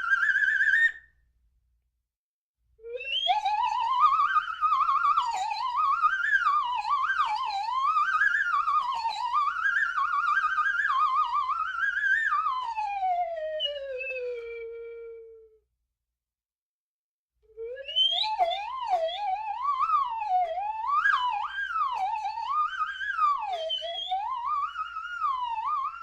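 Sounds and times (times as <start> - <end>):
slide whistle: 0.0 - 1.1, 17.5 - 26.0.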